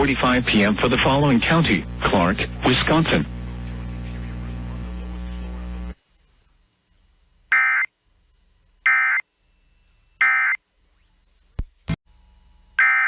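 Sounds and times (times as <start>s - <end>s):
steady radio buzz: 0.0s - 9.3s.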